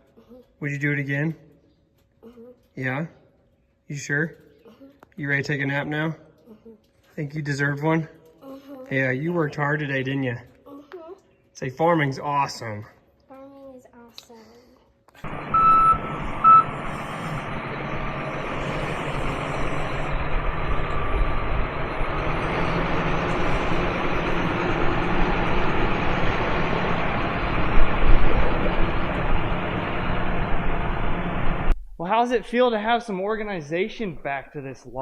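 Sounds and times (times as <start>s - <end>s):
backup alarm beeps: 15.2s - 18.4s
engine running: 15.2s - 31.8s.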